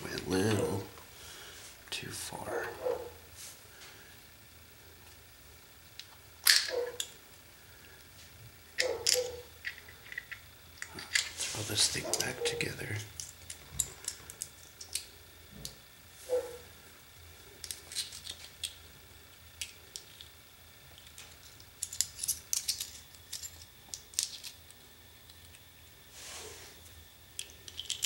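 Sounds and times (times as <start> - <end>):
small metal parts clinking: 6.0 - 7.2, 8.8 - 11.4, 12.1 - 15.2, 17.6 - 18.8, 19.6 - 25.6, 27.4 - 28.0.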